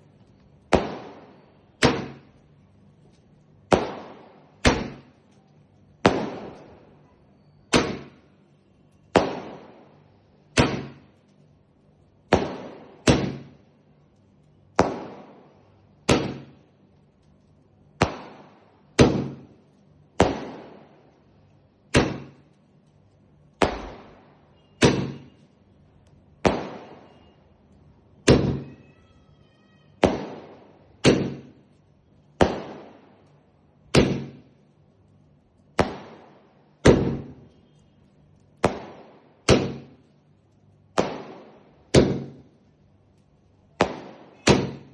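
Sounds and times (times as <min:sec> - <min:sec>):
firework bangs with echo: 0:00.6 - 0:02.5, 0:03.1 - 0:07.1, 0:07.7 - 0:08.4, 0:09.1 - 0:11.2, 0:12.2 - 0:13.7, 0:14.7 - 0:16.7, 0:17.9 - 0:21.0, 0:21.9 - 0:22.5, 0:23.5 - 0:25.5, 0:26.4 - 0:27.4, 0:28.2 - 0:29.1, 0:29.9 - 0:33.3, 0:33.9 - 0:34.6, 0:35.7 - 0:37.7, 0:38.6 - 0:40.1, 0:40.9 - 0:42.6, 0:43.7 - 0:44.9.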